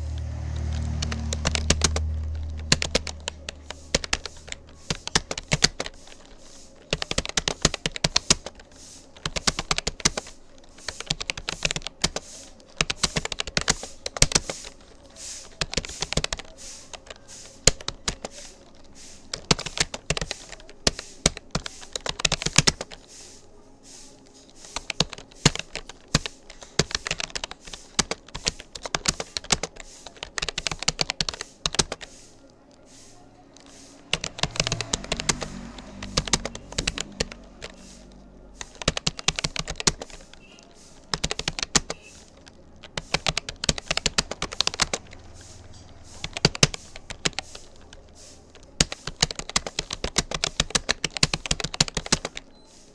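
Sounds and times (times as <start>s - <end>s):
computer keyboard typing: 0.0s - 23.1s, 24.7s - 32.8s, 33.6s - 52.7s.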